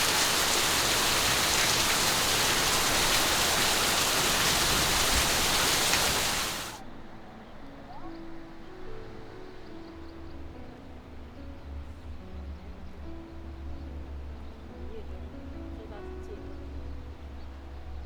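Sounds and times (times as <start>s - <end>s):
heavy rain pouring: 0.0s - 6.8s.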